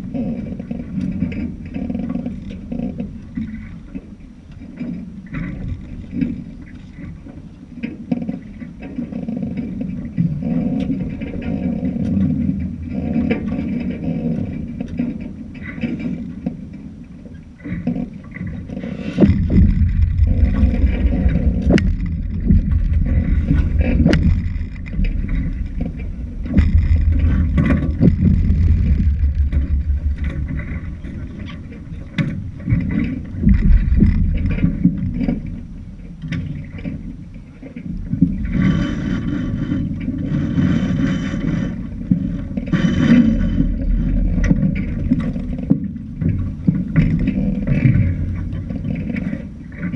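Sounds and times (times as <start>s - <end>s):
boat moving through water: 0.0s - 49.9s
wind rumbling on microphone: 0.0s - 49.9s
water splashing: 17.8s - 35.8s.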